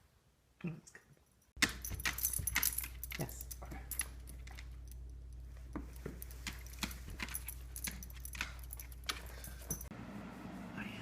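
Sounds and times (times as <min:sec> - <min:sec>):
dog tags clinking: 0:01.2 - 0:09.9.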